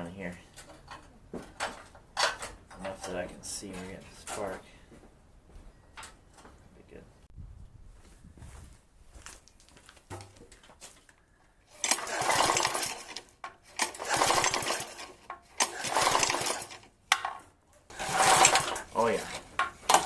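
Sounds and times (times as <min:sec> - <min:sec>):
engine turning over: 0:11.7 - 0:16.9, 0:17.9 - 0:20.0
recoil starter pulls: 0:11.7 - 0:20.0.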